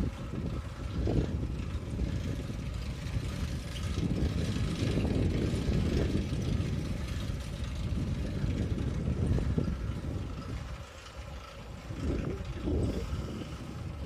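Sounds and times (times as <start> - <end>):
bicycle rolling on road: 0.0 - 14.0
wind buffeting microphone: 0.0 - 14.0.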